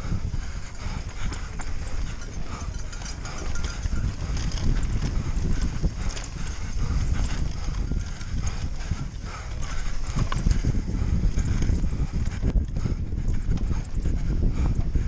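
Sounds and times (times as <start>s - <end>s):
bike rattling over rocky ground: 0.5s - 12.5s.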